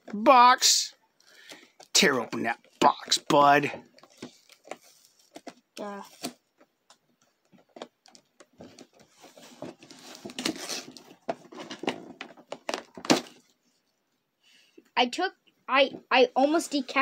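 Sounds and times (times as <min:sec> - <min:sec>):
cardboard box being torn: 0:09.8 - 0:12.0.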